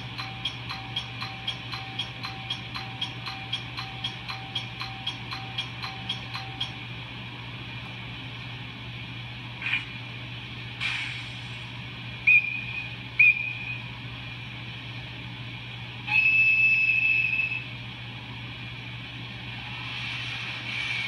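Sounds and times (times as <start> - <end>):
steady low hum: 0.0 - 21.0
electric locomotive horn toots: 16.1 - 17.7.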